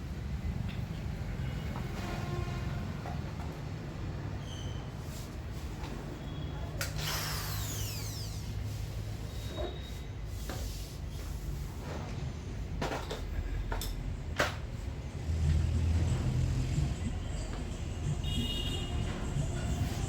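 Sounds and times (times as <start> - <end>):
air compressor and blower humming: 7.0 - 9.0
clicks and knocks of tools: 12.8 - 14.7.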